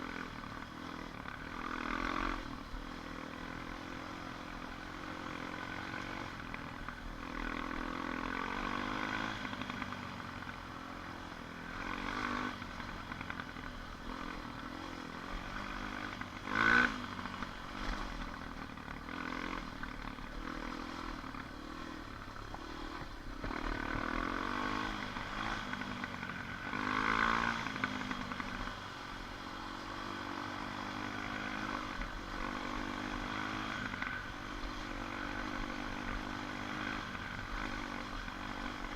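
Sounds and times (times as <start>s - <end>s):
atv engine revving: 0.0s - 38.9s.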